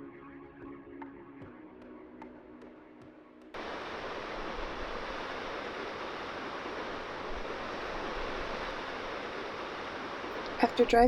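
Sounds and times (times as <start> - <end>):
faint hum: 3.6 - 11.0
waterfall rushing: 3.6 - 11.0.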